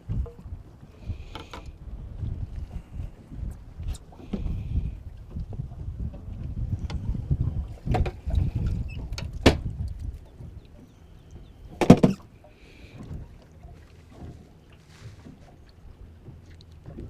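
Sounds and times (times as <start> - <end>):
wind rumbling on microphone: 0.0 - 17.0
knocks in a boat: 7.8 - 10.6, 11.4 - 12.3.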